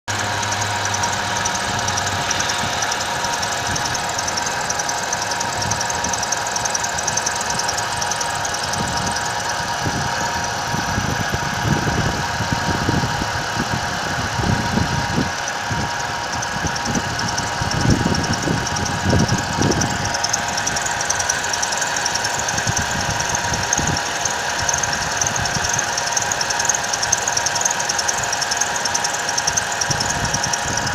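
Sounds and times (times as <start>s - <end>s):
vehicle engine running: 0.0s - 30.9s.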